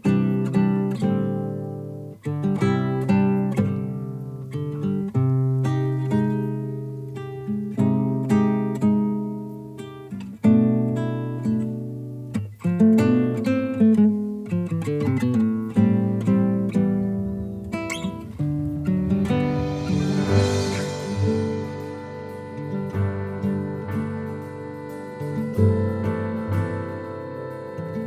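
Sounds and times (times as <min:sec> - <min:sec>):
acoustic guitar: 0:00.0 - 0:28.0.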